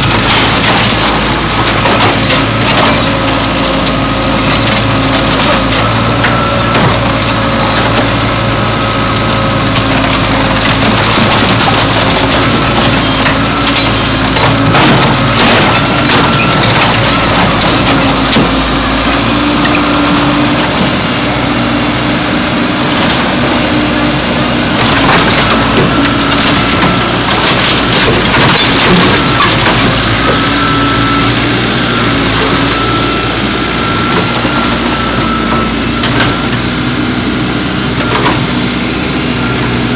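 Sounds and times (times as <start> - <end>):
backhoe engine running: 0.0 - 39.9
metal and glass crunching: 9.7 - 20.2, 24.8 - 30.8.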